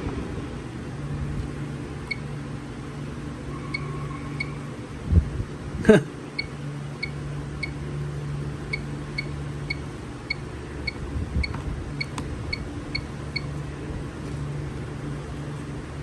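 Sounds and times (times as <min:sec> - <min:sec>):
keypad beeps: 0:08.7 - 0:13.5.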